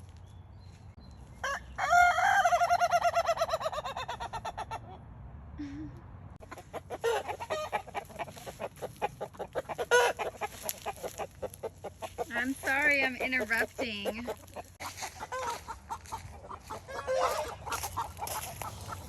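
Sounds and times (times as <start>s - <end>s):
rapid chicken calls: 1.2s - 5.0s, 6.4s - 19.0s
rooster crowing: 1.4s - 4.0s, 16.9s - 17.8s.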